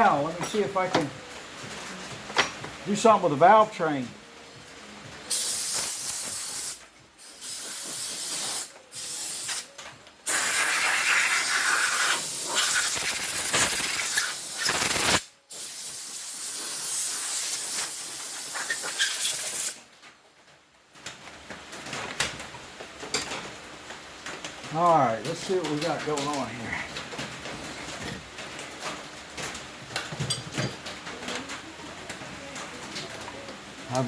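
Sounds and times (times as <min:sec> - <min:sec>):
pressurised jet hissing: 0:05.3 - 0:19.8.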